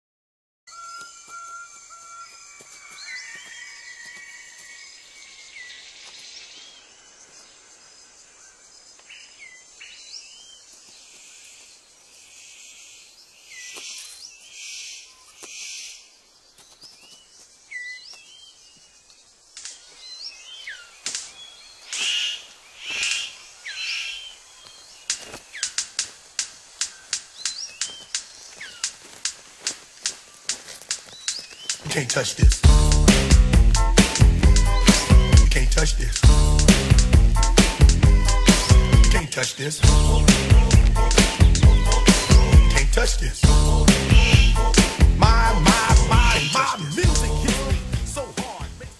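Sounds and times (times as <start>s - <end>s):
bird curling chirps: 0.7s - 32.6s, 33.8s - 36.2s, 38.4s - 43.0s, 43.9s - 47.2s
bird sharp clicks: 21.0s - 23.3s, 25.0s - 32.6s
bird hissing bursts: 21.2s - 24.4s, 43.9s - 45.0s.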